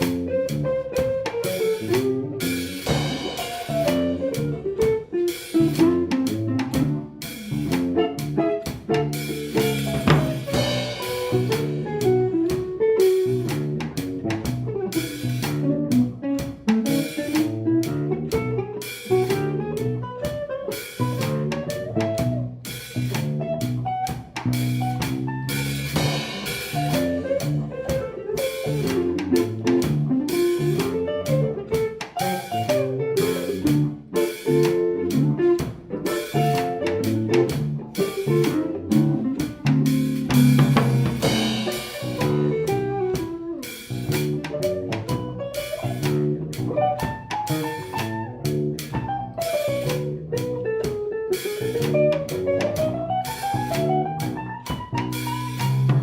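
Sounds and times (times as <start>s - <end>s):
drum kit hits: 0.0s - 56.0s
live jazz-funk band playing: 0.0s - 56.0s
repeating bass line: 1.8s - 4.8s, 5.6s - 12.4s.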